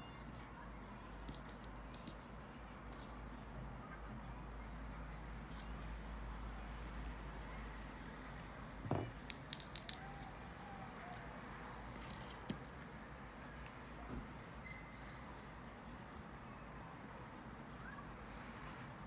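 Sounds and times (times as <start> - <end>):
laptop parts clicking: 8.4 - 13.8.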